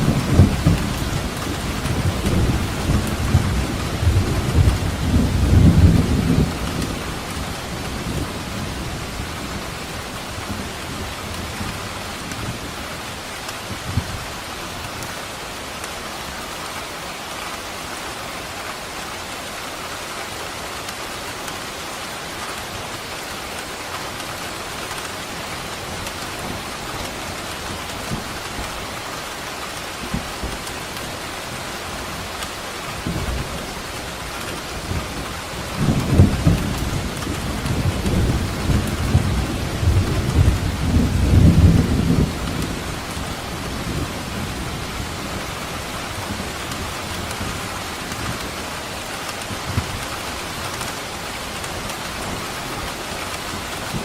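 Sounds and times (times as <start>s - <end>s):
rolling thunder rumble: 0.0s - 11.8s, 33.0s - 48.6s
heavy rain falling: 0.0s - 54.0s.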